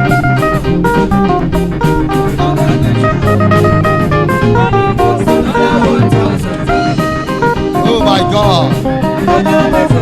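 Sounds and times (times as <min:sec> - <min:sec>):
bass: 0:00.0 - 0:10.0
drum kit beat: 0:00.0 - 0:10.0
guitar picking a melody: 0:00.0 - 0:10.0.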